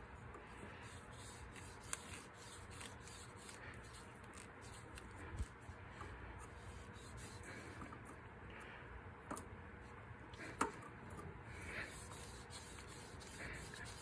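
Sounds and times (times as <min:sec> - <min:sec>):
faint rubbing and handling: 0:00.0 - 0:08.1, 0:11.6 - 0:14.0.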